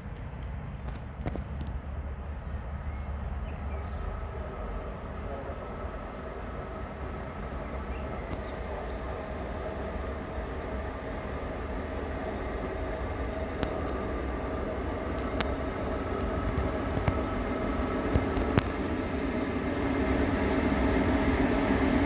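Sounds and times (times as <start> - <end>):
freight train rumbling past: 0.0 - 22.0
faint steady whine: 2.2 - 22.0.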